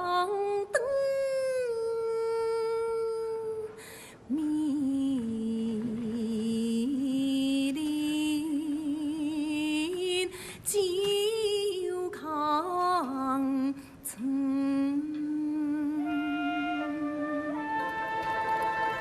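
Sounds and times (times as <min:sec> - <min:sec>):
woman singing opera aria: 0:00.0 - 0:19.0
instrumental accompaniment: 0:16.0 - 0:19.0.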